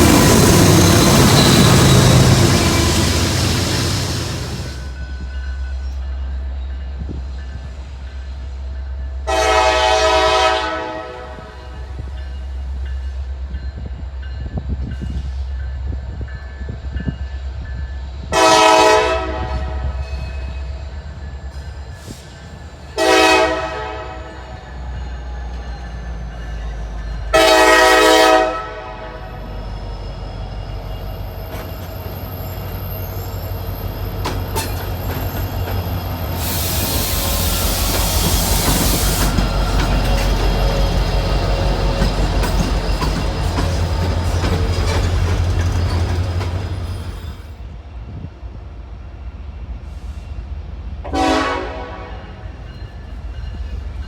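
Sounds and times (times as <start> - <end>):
train passing rumble: 0.0 - 54.0
locomotive air horn blasts: 9.3 - 11.7, 18.4 - 20.0, 23.0 - 24.4, 27.3 - 29.4, 51.1 - 52.4.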